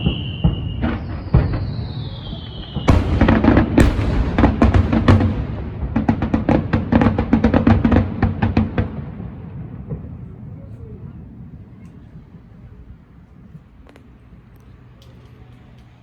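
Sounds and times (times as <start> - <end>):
firework whistle falling in pitch: 0.0 - 4.5
firework bangs: 0.0 - 10.2
rapid firework crackling: 2.8 - 8.3
low rumble: 2.9 - 6.9.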